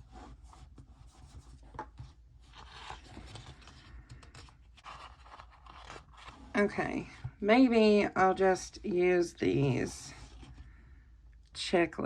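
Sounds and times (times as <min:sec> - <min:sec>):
paper rustling and scratching: 0:00.0 - 0:07.4.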